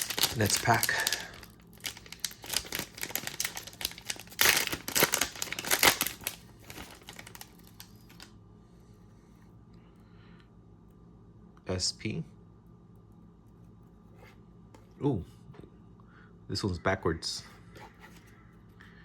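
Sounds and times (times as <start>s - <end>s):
card wrapper tearing and crinkling: 0.0s - 8.3s.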